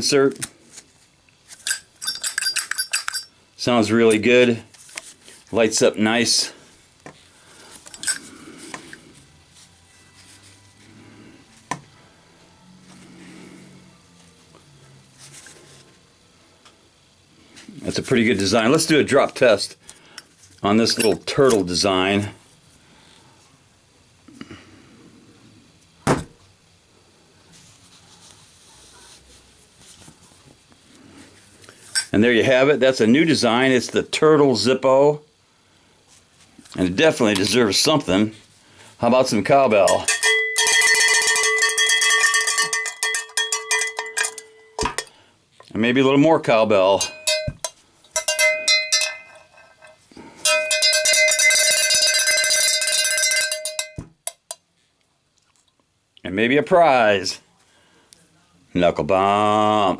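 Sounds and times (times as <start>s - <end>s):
cowbell being struck: 39.9s - 45.1s, 47.0s - 49.7s, 50.4s - 54.1s.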